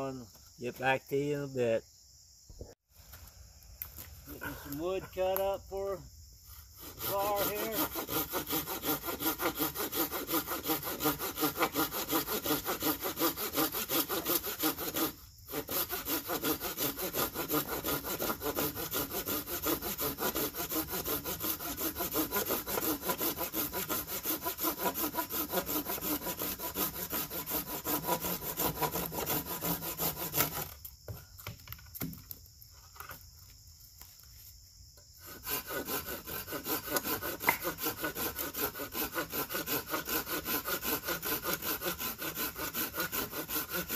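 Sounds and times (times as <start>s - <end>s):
hand saw cutting wood: 6.5s - 30.8s, 35.2s - 43.9s.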